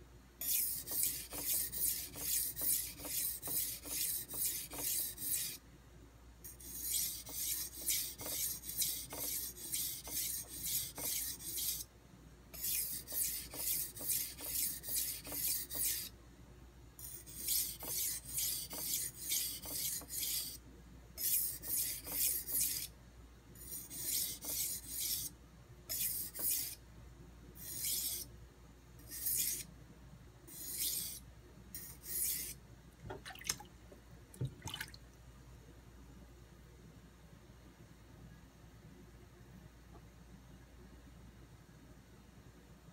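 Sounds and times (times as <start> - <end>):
knife blade rasping on whetstone: 0.4 - 5.6, 6.5 - 11.9, 12.6 - 16.1, 17.0 - 20.6, 21.2 - 22.9, 23.6 - 25.3, 25.9 - 26.8, 27.6 - 28.3, 29.1 - 29.7, 30.5 - 31.2, 31.8 - 32.6.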